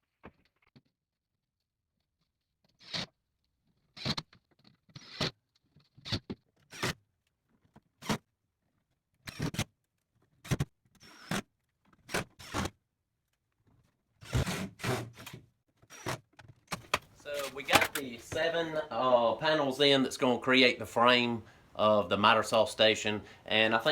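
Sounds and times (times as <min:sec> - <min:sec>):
cordless drill whirring: 0:12.1 - 0:12.7, 0:14.2 - 0:16.2.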